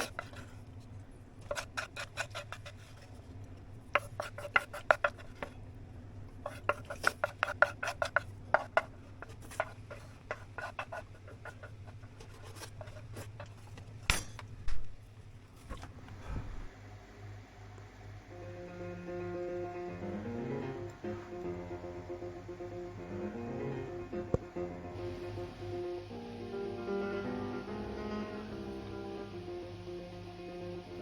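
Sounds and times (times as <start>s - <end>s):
rapid scraping strokes: 1.4s - 3.2s, 6.4s - 13.8s.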